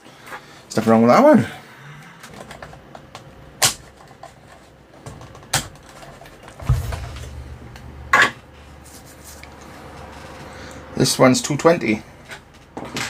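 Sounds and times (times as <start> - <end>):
low hum: 6.5 - 10.4.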